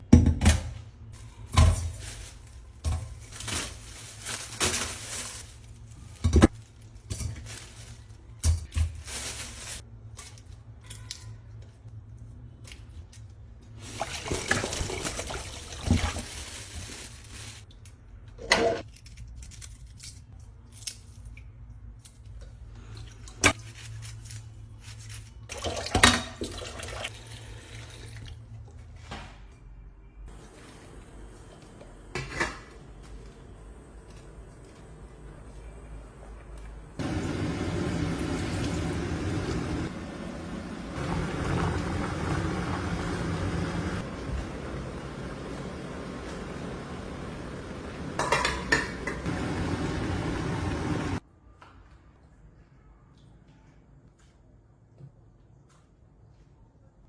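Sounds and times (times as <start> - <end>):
water running at a sink: 13.8 - 16.3, 25.5 - 28.4, 37.0 - 51.2
dishes and utensils clattering: 48.0 - 49.7.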